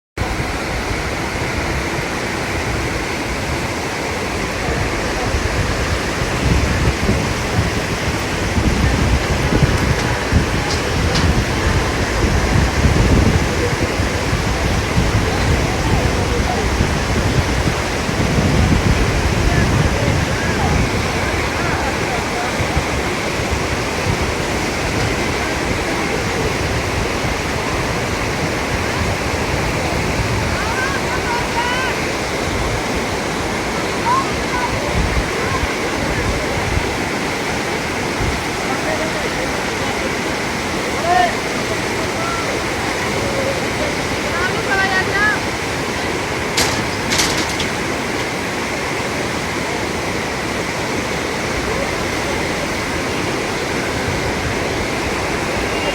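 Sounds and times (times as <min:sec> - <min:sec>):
river rushing over rapids: 0:00.2 - 0:55.9.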